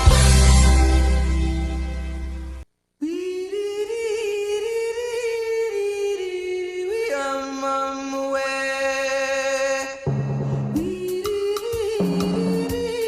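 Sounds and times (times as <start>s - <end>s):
drum hits: 10.1s - 13.0s.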